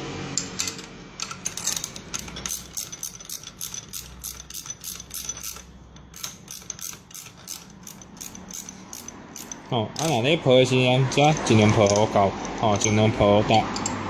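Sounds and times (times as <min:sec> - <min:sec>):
ratchet wrench clicking: 0:00.4 - 0:10.3.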